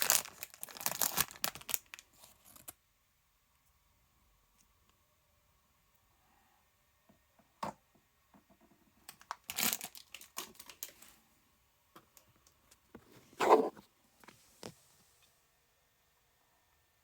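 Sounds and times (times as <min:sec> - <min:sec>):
packaging crinkling and tearing: 0:00.0 - 0:02.8, 0:09.1 - 0:11.0.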